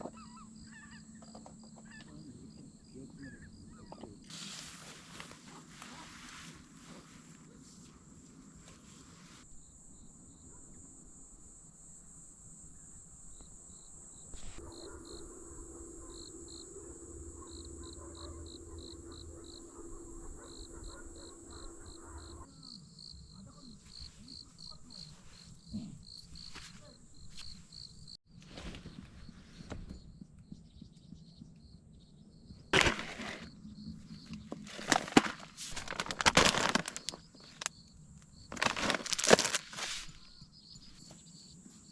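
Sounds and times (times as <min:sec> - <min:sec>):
crickets chirping: 0:00.0 - 0:28.2, 0:29.2 - 0:41.9
high insect trill: 0:09.4 - 0:28.2, 0:32.8 - 0:41.8.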